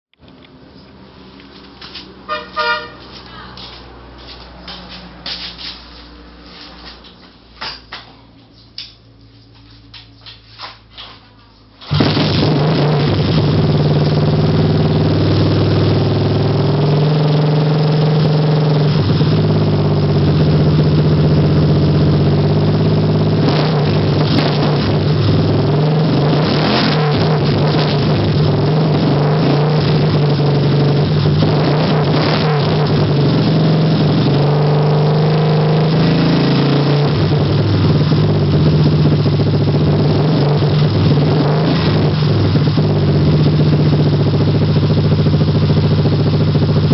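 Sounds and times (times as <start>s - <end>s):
motorcycle engine revving: 11.8s - 46.9s.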